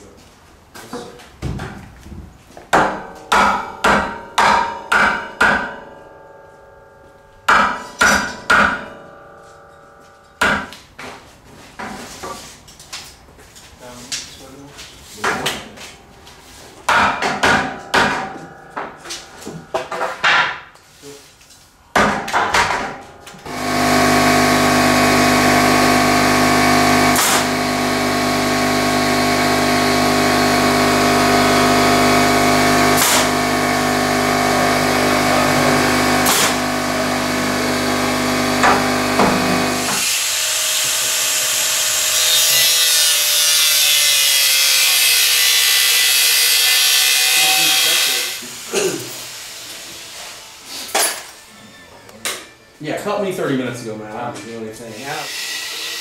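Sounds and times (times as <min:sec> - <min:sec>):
knocking and banging on wood: 0:01.4 - 0:05.7, 0:16.9 - 0:20.7, 0:22.0 - 0:23.0
electric power tool motor: 0:23.4 - 0:50.6, 0:55.0 - 0:56.0.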